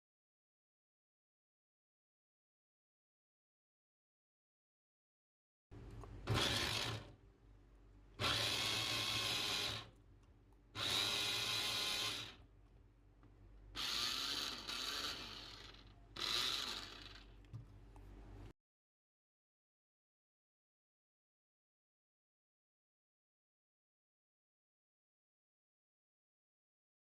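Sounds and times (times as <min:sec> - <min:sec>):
vegetable chopper motor pulsing: 0:06.2 - 0:07.1, 0:08.2 - 0:09.9, 0:10.8 - 0:12.4, 0:13.8 - 0:17.3.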